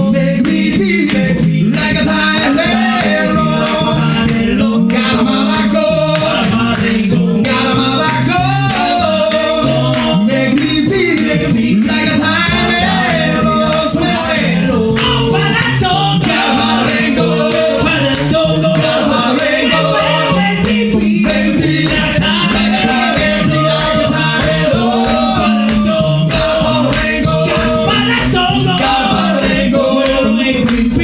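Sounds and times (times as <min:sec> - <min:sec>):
male vocal group singing harmony: 0:00.0 - 0:31.0.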